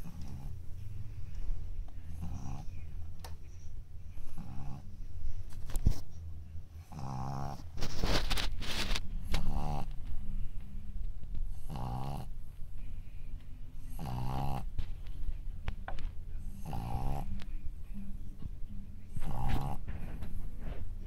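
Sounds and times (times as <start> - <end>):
puppy snoring: 0.0 - 0.6, 2.0 - 2.9, 4.2 - 5.0, 6.8 - 10.3, 11.5 - 12.4, 13.8 - 14.8, 16.4 - 17.4, 19.1 - 20.2.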